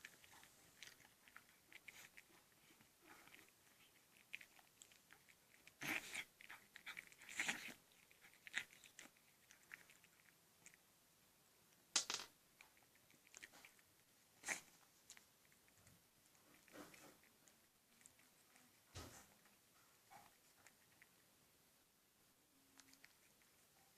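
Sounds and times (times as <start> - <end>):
cat crunching dry treats: 0.0 - 10.8.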